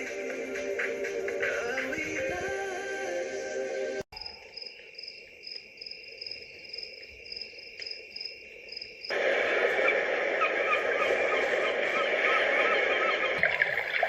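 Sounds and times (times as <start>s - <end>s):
cricket chirping through small speaker: 4.1s - 11.4s
busy nature sound recording: 4.1s - 14.0s.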